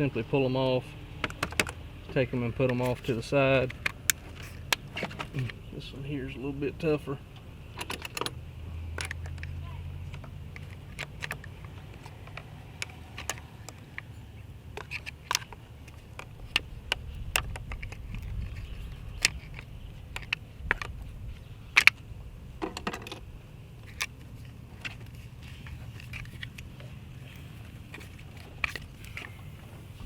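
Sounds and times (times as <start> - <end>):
steady low rumble: 13.9 - 30.0.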